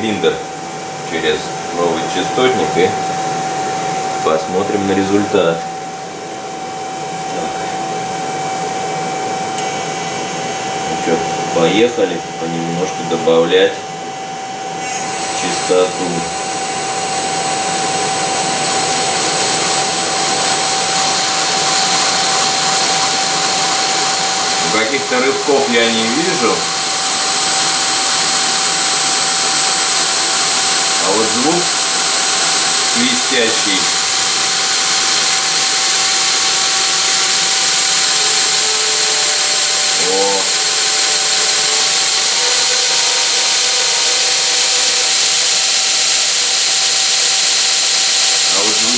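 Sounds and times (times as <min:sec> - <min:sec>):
mid whine: 0:00.0 - 0:48.9
electric motor whirring: 0:09.5 - 0:48.9
high whistle: 0:14.8 - 0:28.0.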